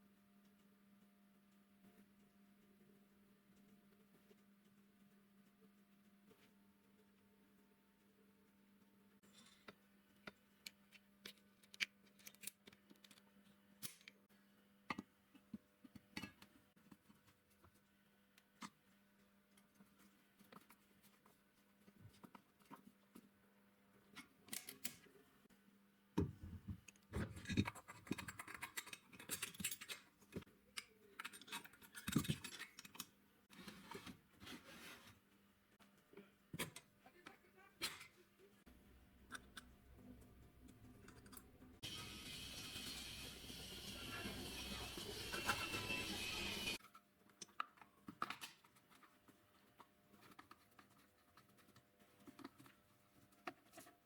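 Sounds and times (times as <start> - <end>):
clicks and scrapes of handling: 26.9 - 36.9, 46.8 - 54.0.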